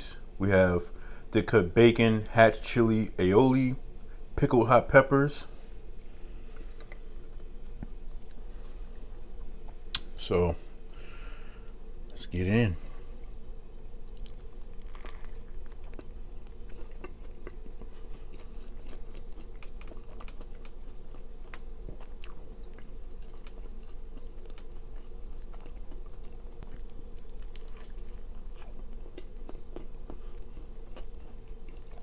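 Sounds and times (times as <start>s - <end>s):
steady low hum: 0.0s - 32.0s
person chewing food: 5.9s - 10.1s, 14.0s - 32.0s.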